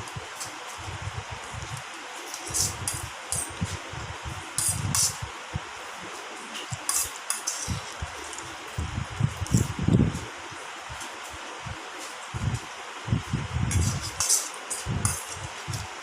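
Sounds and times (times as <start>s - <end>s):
steady background hiss: 0.0s - 16.0s
utensils clinking on plates: 6.5s - 8.4s, 13.7s - 15.4s.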